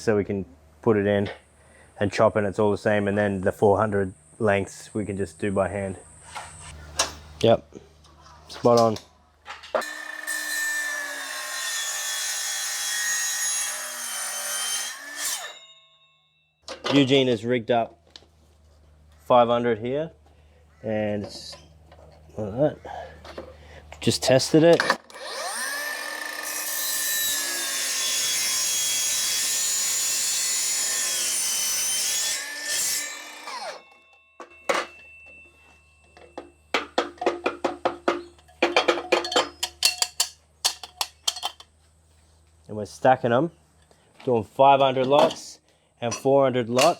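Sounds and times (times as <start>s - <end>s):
chop saw cutting metal tubing: 9.8s - 15.7s, 24.7s - 34.8s
saw blade ringing spin-down: 9.8s - 16.4s, 25.1s - 36.1s.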